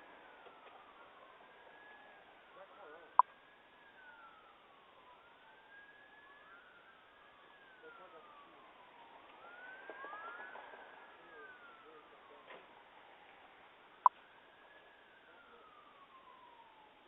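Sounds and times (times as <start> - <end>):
faint emergency siren wailing: 0.0 - 17.0.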